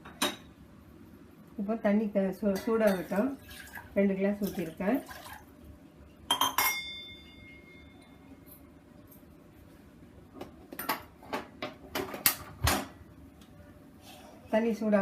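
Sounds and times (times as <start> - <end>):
kitchen utensils clinking: 2.5 - 3.3, 6.3 - 8.0.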